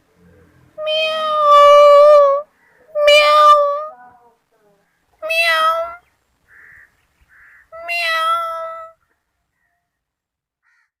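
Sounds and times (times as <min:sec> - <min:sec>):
kitten meowing: 0:00.8 - 0:02.4, 0:03.0 - 0:04.0, 0:05.2 - 0:06.0, 0:07.8 - 0:09.0.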